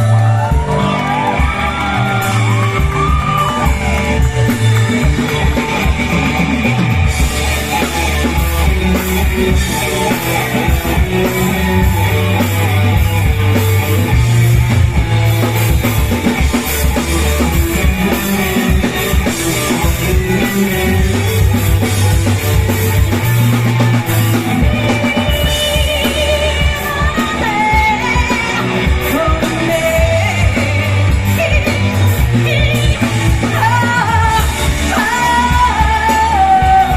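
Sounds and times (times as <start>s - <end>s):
live rock band playing: 0.0s - 36.9s
person singing: 24.4s - 36.9s.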